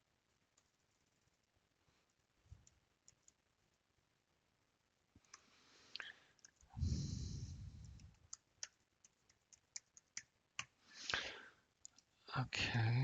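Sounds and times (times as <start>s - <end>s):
computer mouse clicks: 2.6s - 3.4s, 7.8s - 10.8s
person sighing: 6.8s - 8.0s, 11.0s - 11.5s.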